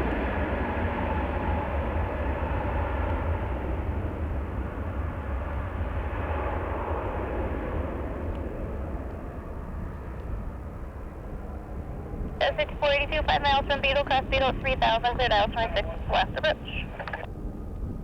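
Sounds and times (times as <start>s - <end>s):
wind rumble on microphone: 0.0s - 18.0s
jet engine rush: 12.4s - 17.3s.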